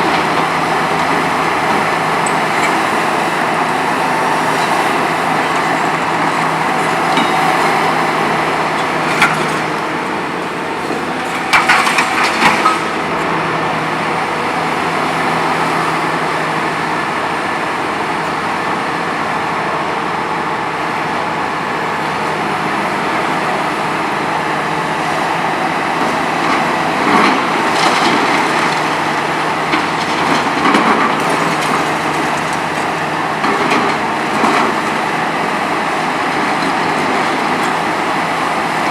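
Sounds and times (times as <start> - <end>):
hydraulic crusher crunching concrete: 0.0 - 14.0, 24.8 - 38.9
excavator running: 0.0 - 38.9.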